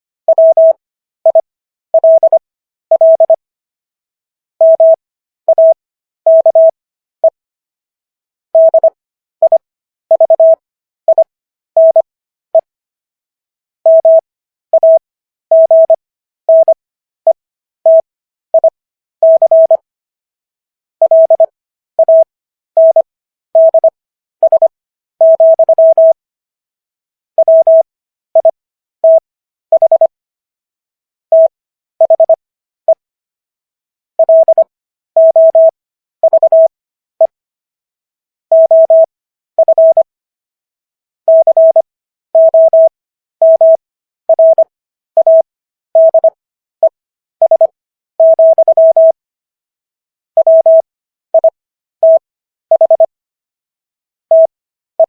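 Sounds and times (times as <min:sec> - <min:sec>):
morse code beeps: 0:00.3 - 0:03.4, 0:04.6 - 0:07.4, 0:08.6 - 0:12.7, 0:13.9 - 0:14.2, 0:14.8 - 0:16.8, 0:18.6 - 0:19.8, 0:21.0 - 0:26.2, 0:27.4 - 0:30.1, 0:31.3 - 0:33.0, 0:34.2 - 0:37.4, 0:38.5 - 0:40.1, 0:41.3 - 0:49.2, 0:50.4 - 0:53.1, 0:54.3 - 0:54.5.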